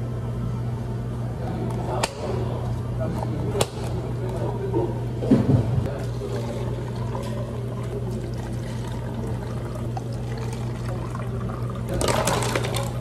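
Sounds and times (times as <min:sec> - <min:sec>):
low machine hum: 0:00.0 - 0:13.0
liquid pouring into a glass: 0:06.1 - 0:13.0.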